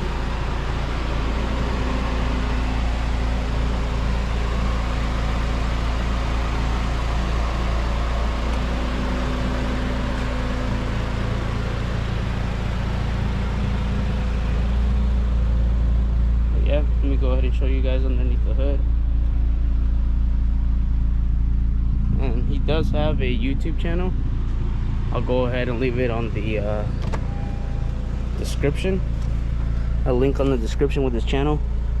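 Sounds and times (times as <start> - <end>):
car engine idling: 0.0 - 32.0.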